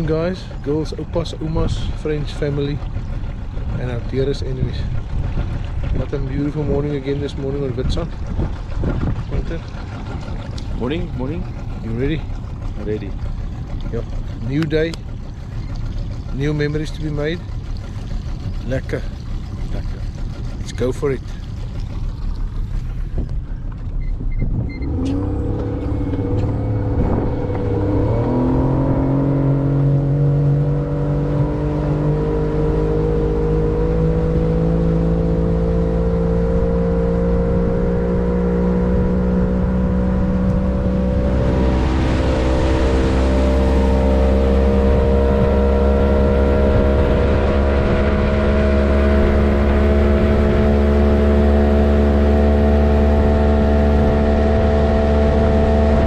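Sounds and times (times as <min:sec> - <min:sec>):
vehicle engine speeding up: 0:24.6 - 0:56.0.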